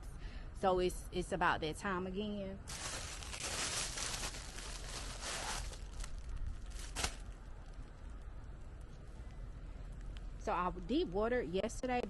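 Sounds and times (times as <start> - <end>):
rustling and crinkling: 2.7 - 9.1.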